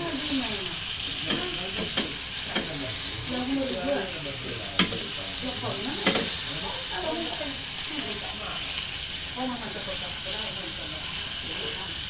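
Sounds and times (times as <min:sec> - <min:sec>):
steak sizzling in a pan: 0:00.0 - 0:12.0
utensil clicking against pan: 0:01.0 - 0:03.0, 0:04.7 - 0:06.5.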